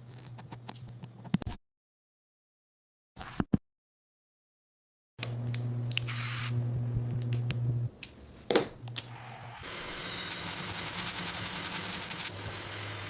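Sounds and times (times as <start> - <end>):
dental equipment humming: 5.2 - 7.9, 8.8 - 13.0.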